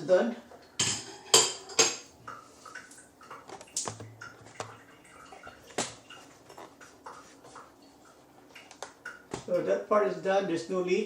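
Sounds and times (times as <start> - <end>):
shower fittings knocking and clicking: 3.4 - 4.8.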